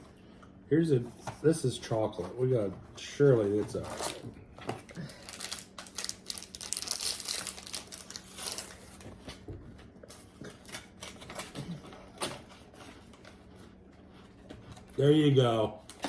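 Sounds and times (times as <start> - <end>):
plastic wrapper crinkling: 5.0 - 9.2.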